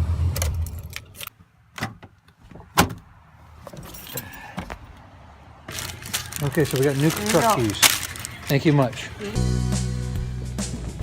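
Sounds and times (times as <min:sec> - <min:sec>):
keys jangling: 0:03.8 - 0:04.4.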